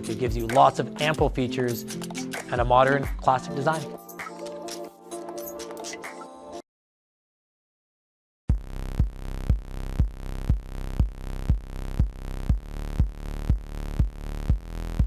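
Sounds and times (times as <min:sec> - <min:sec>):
kick drum beat: 0:08.5 - 0:15.0
synth bass: 0:08.5 - 0:15.0.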